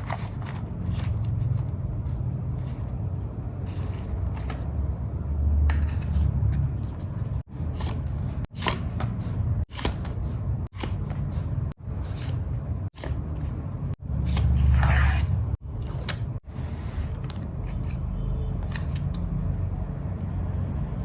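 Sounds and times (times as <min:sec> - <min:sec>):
paper handling: 0:00.0 - 0:04.8
scissors snipping paper: 0:06.0 - 0:11.4, 0:12.0 - 0:16.4, 0:17.0 - 0:19.3.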